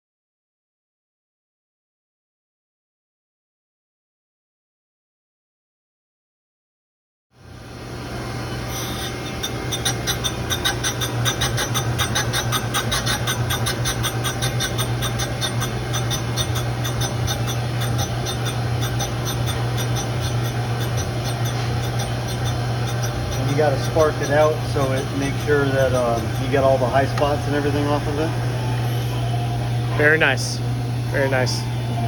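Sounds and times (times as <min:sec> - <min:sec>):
grinding machine motor hum: 0:07.4 - 0:32.0
abrasive wheel scratching metal: 0:08.3 - 0:29.3.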